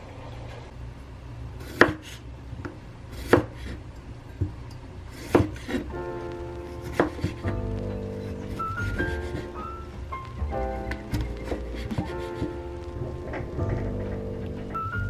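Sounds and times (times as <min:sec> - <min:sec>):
low room hum: 0:00.0 - 0:15.0
soft background music: 0:05.8 - 0:15.0.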